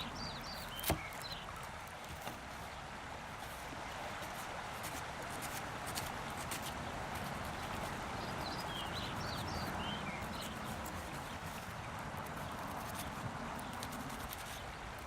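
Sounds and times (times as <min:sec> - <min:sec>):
bird chirps: 0:00.0 - 0:01.5.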